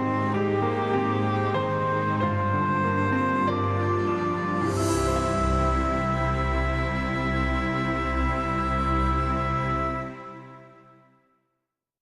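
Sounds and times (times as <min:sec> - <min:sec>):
sustained music chord: 0:04.5 - 0:10.6.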